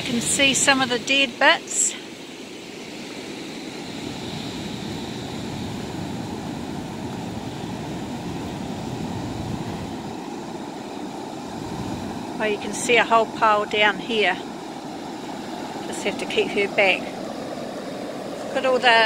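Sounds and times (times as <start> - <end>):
surf breaking on beach: 3.8 - 19.0.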